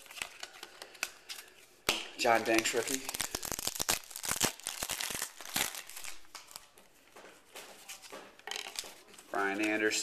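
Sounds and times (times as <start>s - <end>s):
wrapper crinkling: 2.2s - 6.8s.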